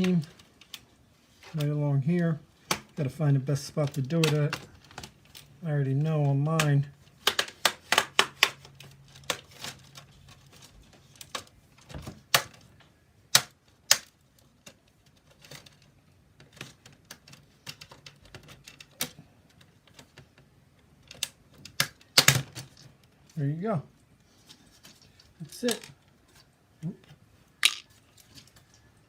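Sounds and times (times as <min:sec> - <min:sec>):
plastic clips snapping: 0:06.6 - 0:09.8.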